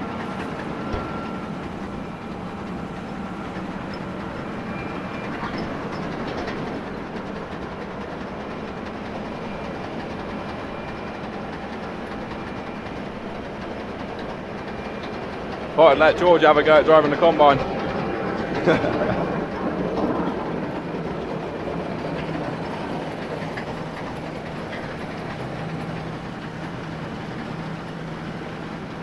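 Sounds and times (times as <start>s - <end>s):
combine harvester running: 0.0s - 29.0s.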